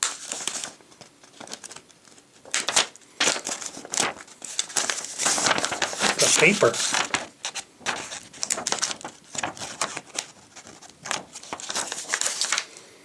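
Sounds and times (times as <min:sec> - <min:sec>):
paper crinkling: 0:02.4 - 0:12.7.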